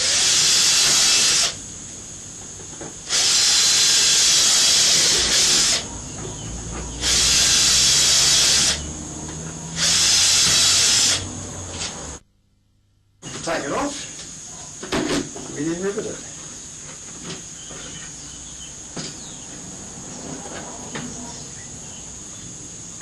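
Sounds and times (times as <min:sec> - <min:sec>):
power drill drilling: 0:00.0 - 0:01.6, 0:03.0 - 0:05.9, 0:07.0 - 0:08.8, 0:09.7 - 0:11.3.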